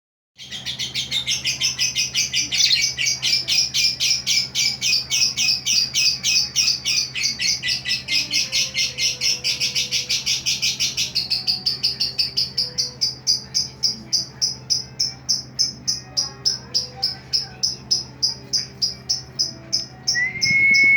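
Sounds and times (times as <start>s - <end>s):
songbird high chirps: 0.5s - 13.5s.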